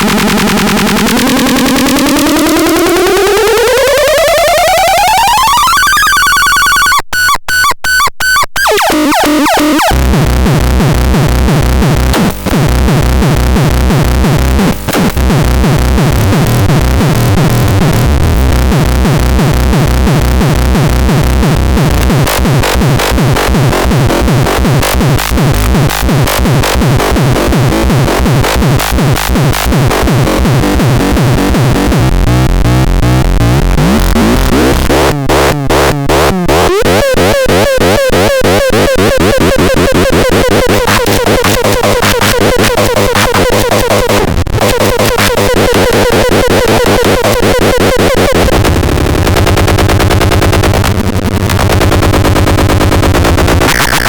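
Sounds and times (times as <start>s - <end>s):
electronic synthesizer music: 0.0s - 54.0s.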